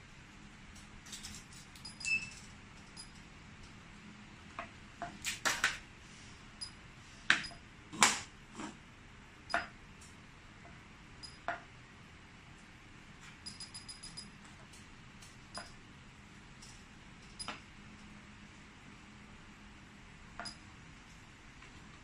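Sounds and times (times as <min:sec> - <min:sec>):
alarm keypad beeps: 0:13.4 - 0:14.4.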